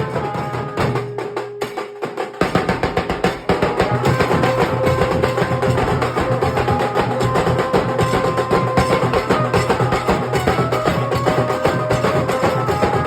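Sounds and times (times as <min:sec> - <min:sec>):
dhol drumming: 0:00.0 - 0:13.0
held melody line: 0:03.5 - 0:13.0.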